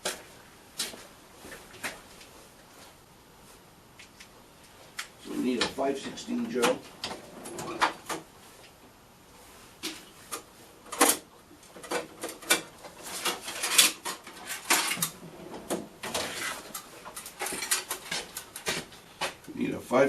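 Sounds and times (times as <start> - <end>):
metal tools clinking and rattling: 16.3 - 18.7.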